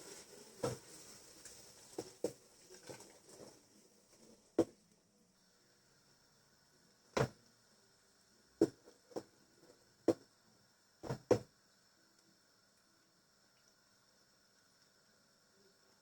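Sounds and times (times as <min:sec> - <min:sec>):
faint steady hum: 0:00.0 - 0:16.0.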